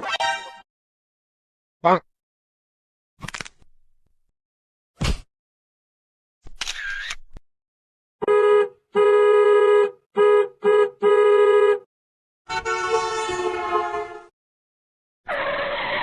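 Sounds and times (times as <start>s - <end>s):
reedy horn blasts: 8.2s - 11.9s, 12.5s - 14.3s.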